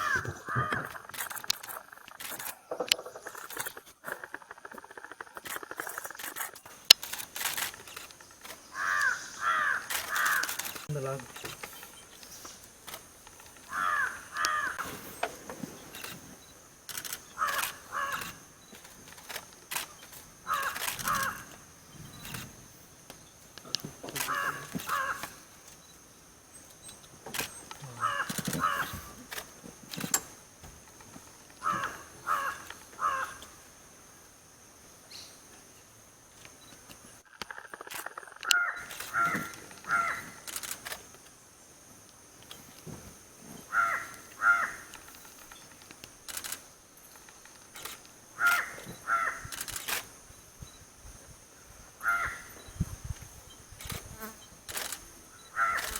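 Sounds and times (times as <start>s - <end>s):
crow cawing: 0.0s - 1.1s, 8.7s - 10.8s, 13.7s - 14.9s, 17.4s - 18.5s, 20.5s - 21.5s, 24.2s - 25.4s, 27.8s - 29.2s, 31.6s - 33.5s, 38.5s - 40.5s, 43.7s - 44.9s, 48.4s - 49.5s, 52.0s - 52.5s, 55.5s - 55.9s.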